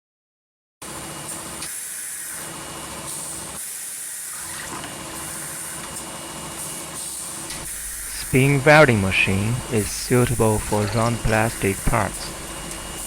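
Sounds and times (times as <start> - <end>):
spin welding machine running: 0.9 - 13.0
steady air hiss: 7.0 - 13.0
low hum: 7.5 - 13.0.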